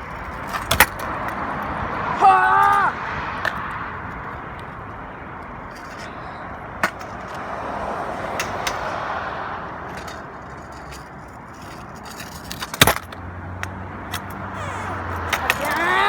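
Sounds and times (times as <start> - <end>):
scooter deck clattering: 0.0 - 1.4, 5.7 - 6.2, 6.8 - 7.4, 8.3 - 8.9, 9.8 - 16.0
scooter wheels rolling on pavement: 0.0 - 16.0.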